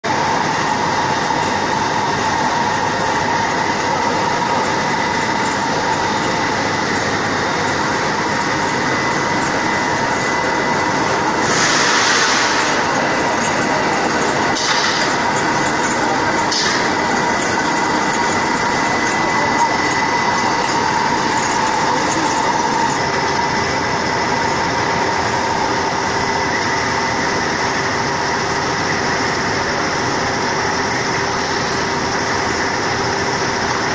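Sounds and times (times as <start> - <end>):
sanding machine whining: 0.1 - 33.9
hissing surge: 10.9 - 13.9.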